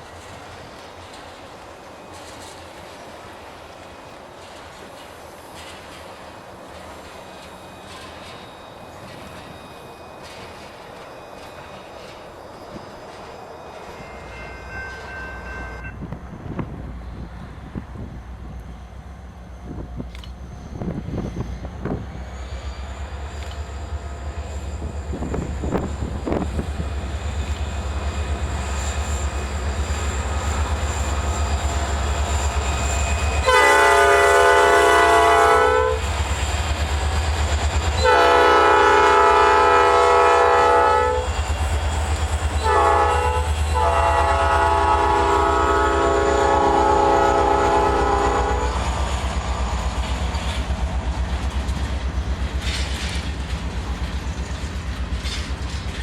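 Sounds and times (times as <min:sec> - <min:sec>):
diesel locomotive engine rumble: 0:00.0 - 0:56.0
multi-chime air horn blasts: 0:31.9 - 0:36.1, 0:38.0 - 0:41.3, 0:42.6 - 0:48.9.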